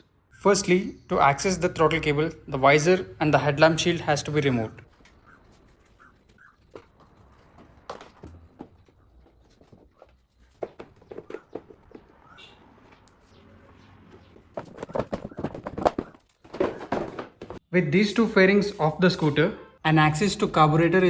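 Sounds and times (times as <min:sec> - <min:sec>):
plastic panels clicking and knocking: 0:14.2 - 0:17.6.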